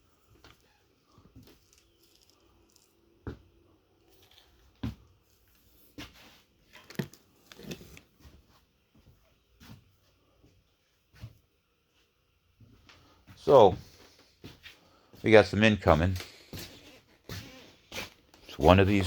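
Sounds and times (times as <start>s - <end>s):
small objects knocking and rustling: 0.3s - 5.6s, 6.6s - 8.1s.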